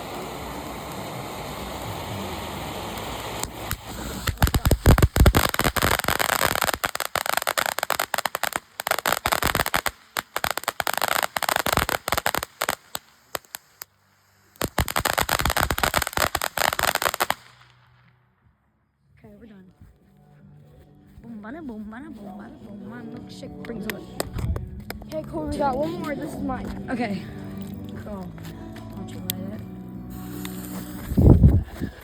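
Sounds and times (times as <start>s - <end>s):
firework hissing: 0.0s - 17.8s, 30.0s - 32.0s
firework crackling pops: 0.0s - 18.0s, 23.6s - 26.4s, 29.2s - 32.0s.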